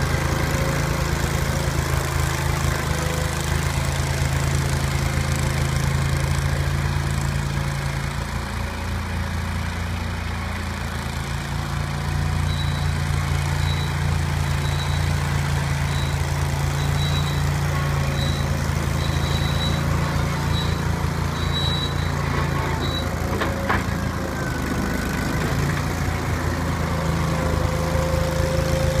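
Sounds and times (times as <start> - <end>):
loader engine running: 0.0 - 29.0
high beeps: 14.6 - 15.1, 15.9 - 17.5, 18.1 - 22.2.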